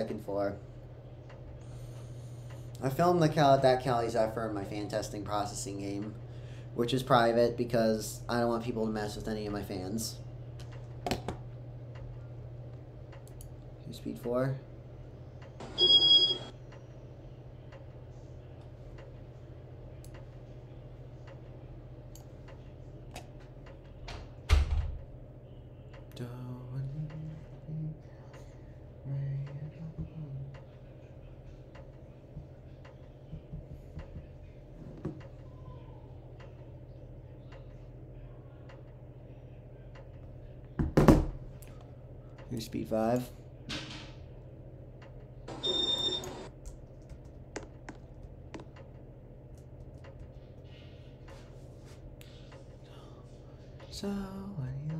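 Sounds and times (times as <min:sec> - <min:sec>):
ceiling fan motor hum: 0:00.0 - 0:54.9
two-tone beep: 0:15.7 - 0:16.5.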